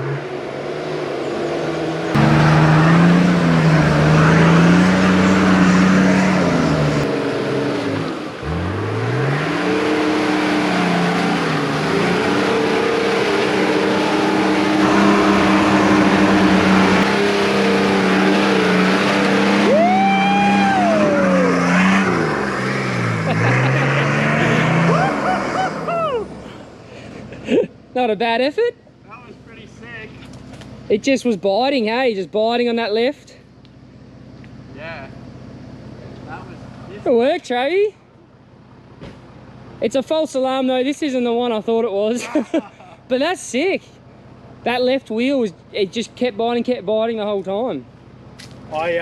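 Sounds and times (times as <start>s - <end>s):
engine revving under load: 0.0s - 27.6s
short squeal: 12.8s - 19.4s.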